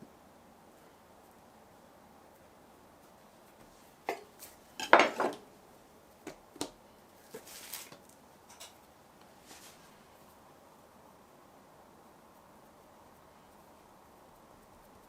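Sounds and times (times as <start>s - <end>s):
dishware clatter: 4.8s - 5.4s
dishware knocking and clinking: 4.8s - 5.4s
soft scraping rustle: 7.2s - 10.4s.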